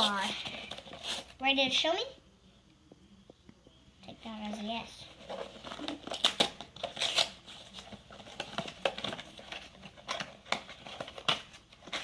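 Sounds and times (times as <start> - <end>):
packaging crinkling and tearing: 5.2 - 12.0.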